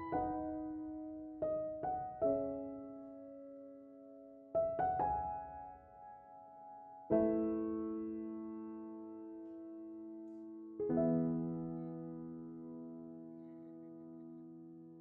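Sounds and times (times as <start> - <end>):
slow soft piano music: 0.0 - 15.0.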